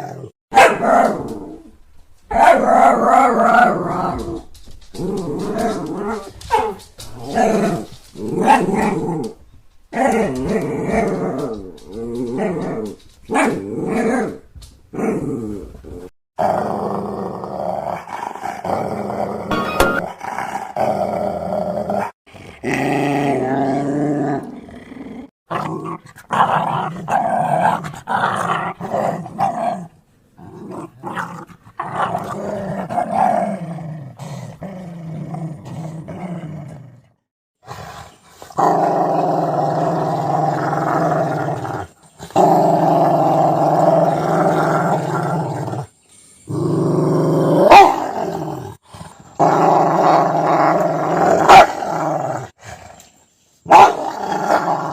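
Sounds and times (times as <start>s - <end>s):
dog barking: 0.5s - 1.2s, 2.3s - 2.7s, 47.7s - 48.1s, 51.5s - 51.8s, 53.7s - 54.1s
large dogs growling: 2.6s - 6.4s, 7.0s - 9.4s, 10.0s - 13.0s, 20.4s - 45.9s, 46.5s - 53.1s.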